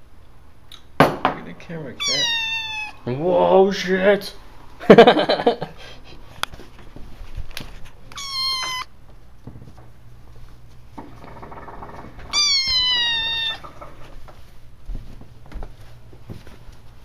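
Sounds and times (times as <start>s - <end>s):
kitten meowing: 2.0s - 3.1s, 8.1s - 9.0s, 12.3s - 13.7s.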